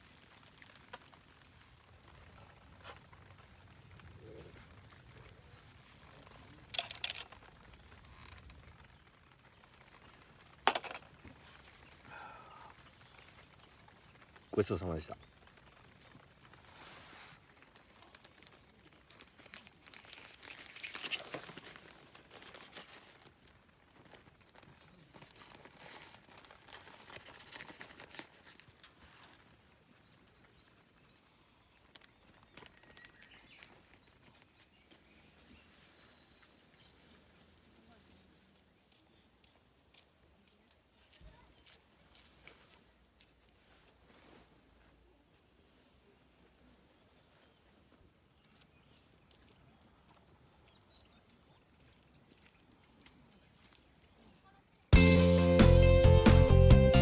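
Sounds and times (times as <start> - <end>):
gear rustling and clicking: 0.0 - 12.1, 17.4 - 29.6.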